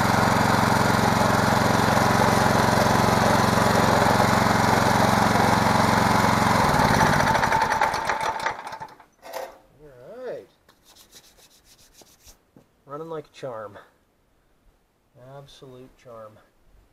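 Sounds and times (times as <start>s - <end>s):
mini bike engine running: 0.0s - 9.0s.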